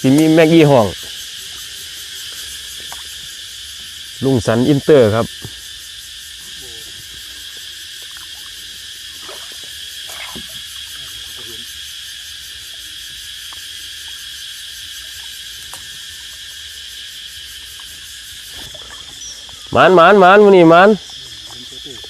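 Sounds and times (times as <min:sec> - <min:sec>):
cicadas calling: 0:00.0 - 0:22.0
distant voices: 0:18.6 - 0:22.0.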